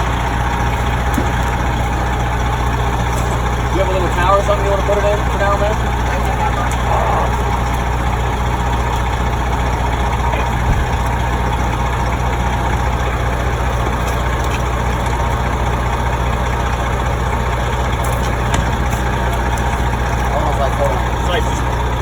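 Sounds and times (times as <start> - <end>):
heavy engine running: 0.0 - 22.0.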